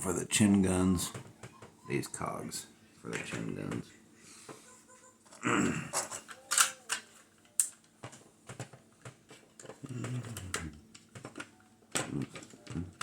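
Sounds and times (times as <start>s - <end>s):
plastic toy parts clicking: 5.9s - 13.0s.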